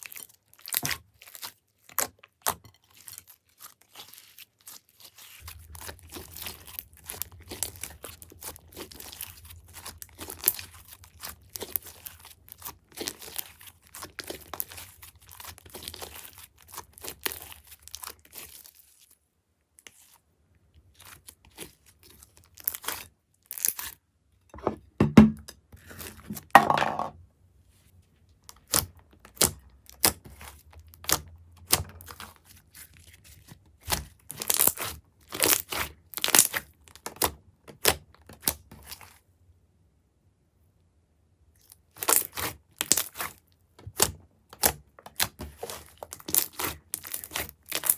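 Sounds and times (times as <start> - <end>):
slime crackling and popping: 0.0 - 19.1, 28.5 - 32.9, 33.8 - 39.1, 41.7 - 47.9
slime squishes: 0.0 - 24.0, 28.3 - 39.3, 41.5 - 47.9.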